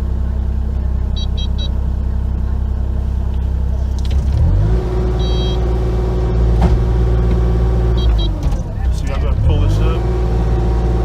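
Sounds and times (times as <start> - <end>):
excavator diesel engine running: 0.0 - 11.0
short high-pitched beep: 1.2 - 1.8, 5.2 - 5.6.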